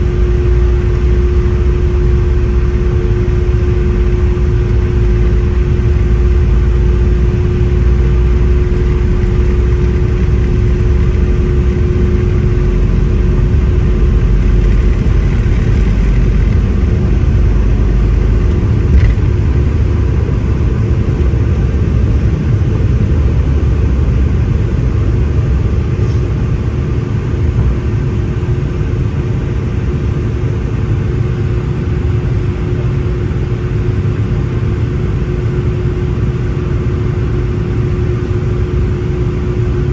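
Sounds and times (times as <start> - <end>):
jet engines rumbling: 0.0 - 39.9.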